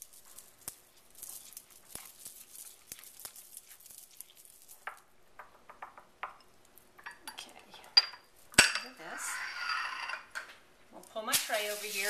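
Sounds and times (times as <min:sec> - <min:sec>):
utensil scraping a bowl: 0:09.0 - 0:10.3.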